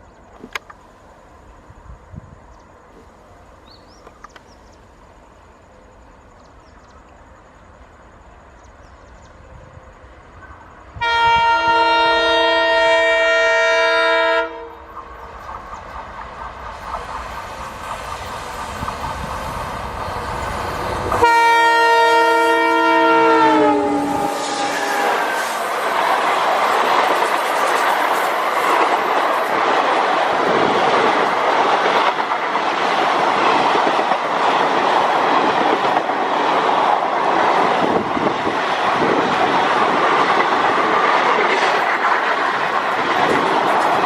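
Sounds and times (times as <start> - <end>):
diesel locomotive engines: 0.0 - 44.0
train horn blasts: 10.9 - 15.0, 20.8 - 25.7
train clatter: 14.8 - 23.0, 23.7 - 44.0.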